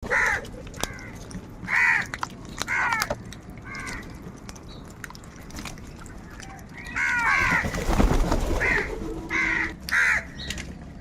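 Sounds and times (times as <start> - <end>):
crows cawing: 0.1 - 2.1, 2.7 - 4.1, 6.8 - 7.8, 8.6 - 10.5.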